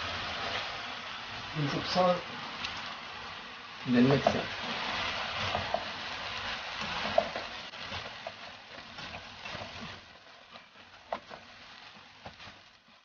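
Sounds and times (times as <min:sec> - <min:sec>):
rice sizzling in a hot pan: 0:00.0 - 0:13.0
spatula scraping a pan: 0:04.2 - 0:13.0.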